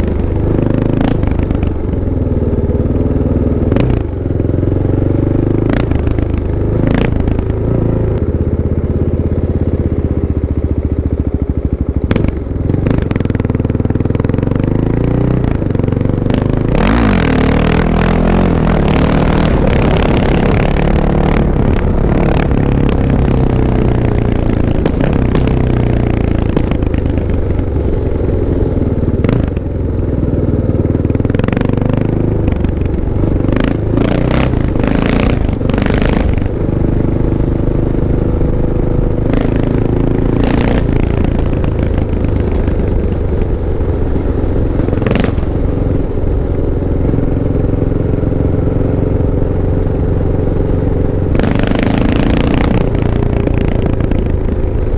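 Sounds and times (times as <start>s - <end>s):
motorcycle engine running: 0.0s - 54.9s.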